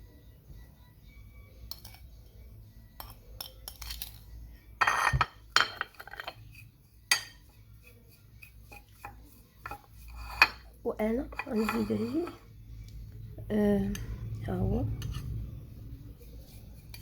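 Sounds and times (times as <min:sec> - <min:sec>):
spoon clinking and scraping bowl: 0:01.6 - 0:12.5, 0:14.9 - 0:17.0.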